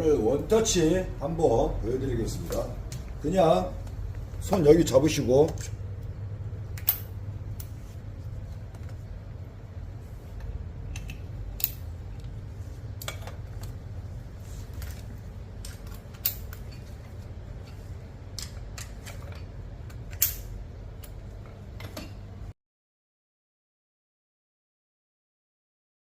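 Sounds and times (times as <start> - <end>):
steady low hum: 0.0 - 22.6
mechanism clicks and clacks: 6.7 - 7.8, 10.8 - 12.4, 14.8 - 22.4.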